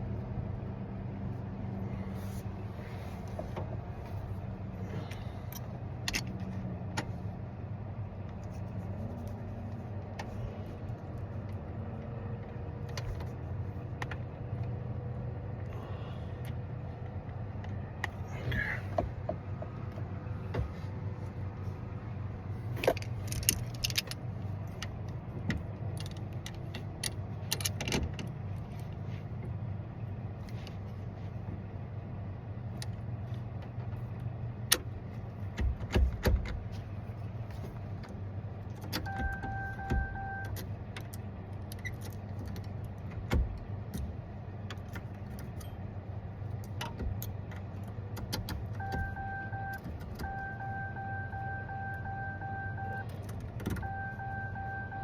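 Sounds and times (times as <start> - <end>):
steady low hum: 0.0 - 55.0
short electronic beep: 48.8 - 53.0, 53.8 - 55.0.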